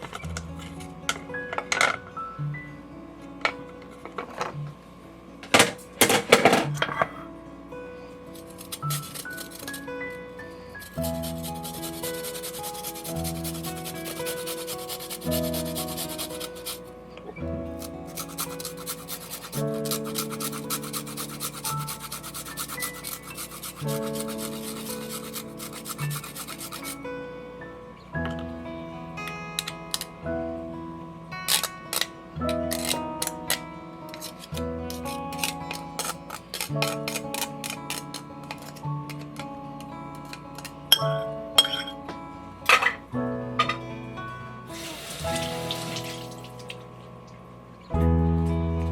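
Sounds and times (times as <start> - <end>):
plucked guitar music: 0.0 - 6.0, 9.8 - 48.9
quick scratching strokes: 10.8 - 16.8, 17.8 - 27.0.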